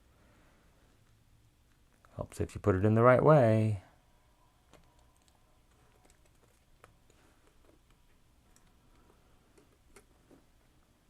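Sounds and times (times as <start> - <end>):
faint clicks and taps: 4.6 - 10.9.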